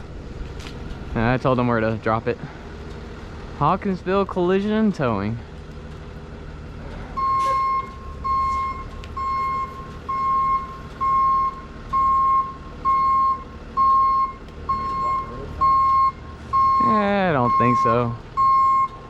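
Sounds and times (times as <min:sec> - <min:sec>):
truck engine rumble: 0:00.0 - 0:19.0
truck backup alarm beeping: 0:07.1 - 0:19.0.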